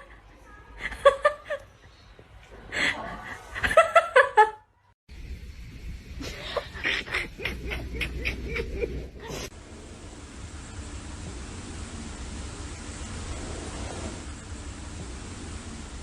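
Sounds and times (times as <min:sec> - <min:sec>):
steady low rumble: 0:05.1 - 0:16.0
person laughing: 0:06.2 - 0:09.5.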